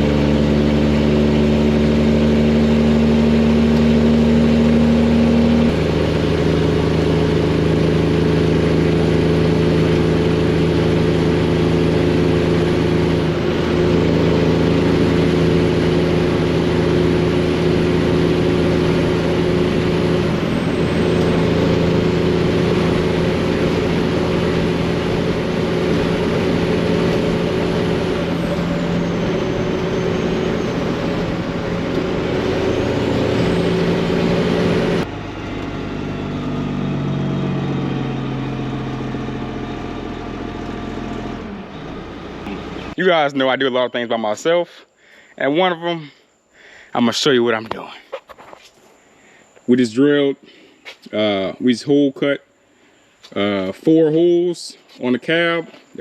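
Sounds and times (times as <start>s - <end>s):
diesel truck engine running: 0.0s - 46.2s.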